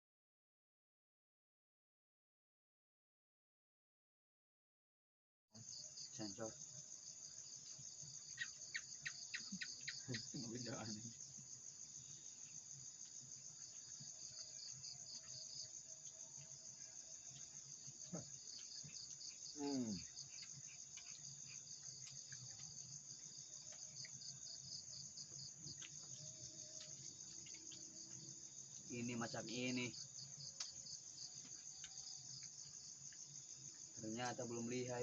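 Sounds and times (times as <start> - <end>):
insects trilling: 5.6 - 35.0.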